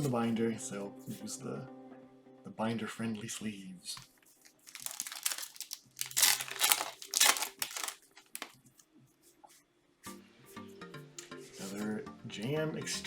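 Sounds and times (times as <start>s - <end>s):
plastic card sleeves crinkling: 4.5s - 8.6s.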